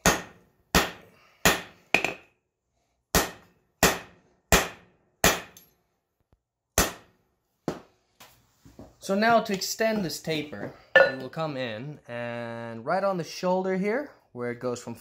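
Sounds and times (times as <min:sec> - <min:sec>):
hammer striking steel on anvil: 0:00.0 - 0:02.3, 0:03.1 - 0:05.7, 0:11.0 - 0:11.3.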